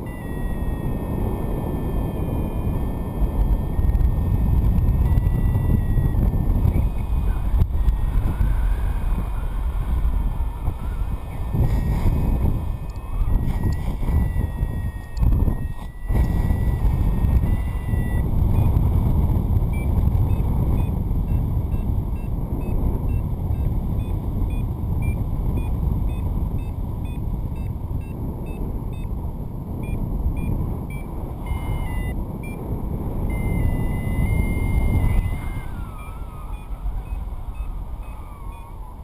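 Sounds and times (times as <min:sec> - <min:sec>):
held tones stepping in pitch: 0:00.0 - 0:18.8, 0:33.3 - 0:39.0
variometer beeping: 0:00.0 - 0:39.0
wind rushing over microphone: 0:00.0 - 0:39.0.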